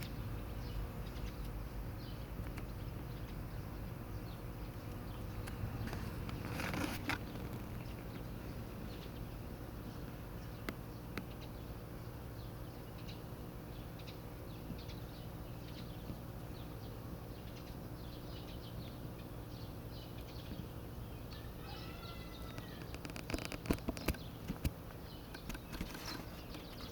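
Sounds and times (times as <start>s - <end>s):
steady low hum: 0.0s - 26.9s
rustle: 4.8s - 9.1s, 21.3s - 26.9s.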